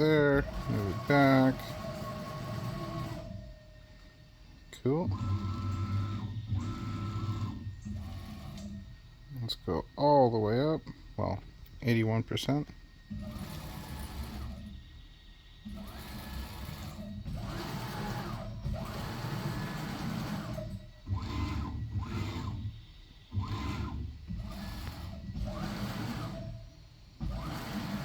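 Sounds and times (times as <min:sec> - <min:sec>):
stepper motors whining: 0:00.0 - 0:04.1, 0:12.4 - 0:28.0.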